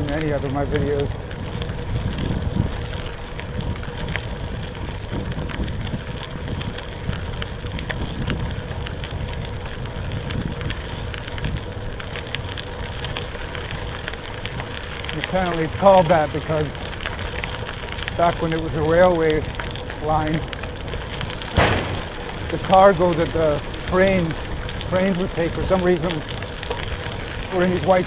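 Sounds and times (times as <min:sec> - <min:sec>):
bicycle tyres rolling on dirt: 0:00.0 - 0:28.0
grit crackling under wheels: 0:00.0 - 0:28.0
wind on microphone: 0:21.6 - 0:26.4.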